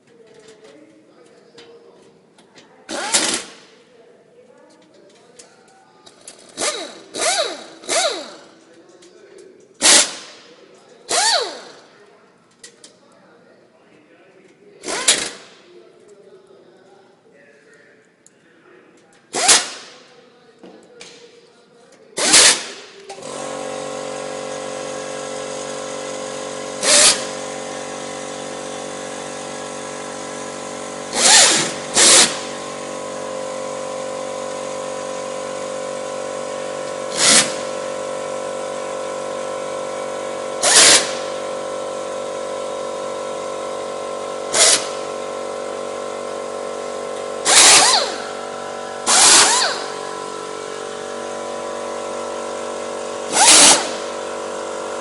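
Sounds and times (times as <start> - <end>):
steady mechanical hum: 0.0 - 55.0
power drill driving screws: 2.9 - 3.6, 6.5 - 8.5, 9.8 - 10.3, 11.1 - 11.8, 19.3 - 20.0, 22.2 - 38.0, 38.7 - 42.5, 43.5 - 55.0.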